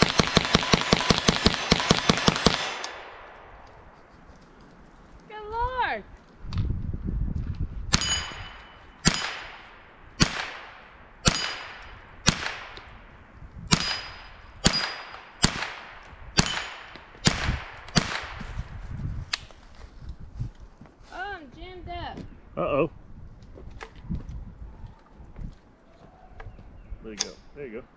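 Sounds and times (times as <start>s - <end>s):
metal target ringing: 7.9s - 10.3s, 11.2s - 12.4s, 13.7s - 15.4s, 16.4s - 17.0s.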